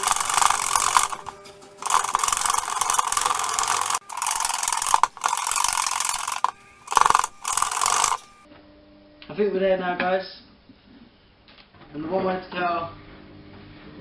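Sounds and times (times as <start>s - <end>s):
whisk beating in a bowl: 0.0s - 8.4s.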